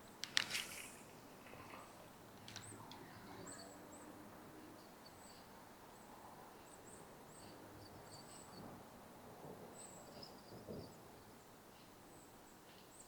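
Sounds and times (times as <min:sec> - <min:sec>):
light clicks: 0:00.2 - 0:03.1.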